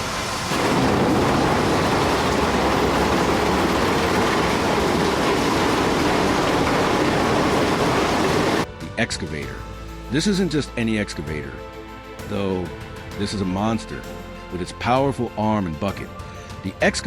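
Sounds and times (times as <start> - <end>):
heavy machinery rumbling in mud: 0.0 - 8.7.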